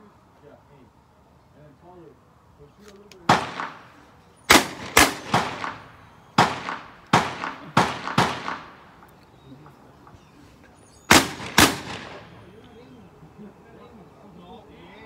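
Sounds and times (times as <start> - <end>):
gunshots with echo: 3.3 - 9.0, 11.1 - 12.4.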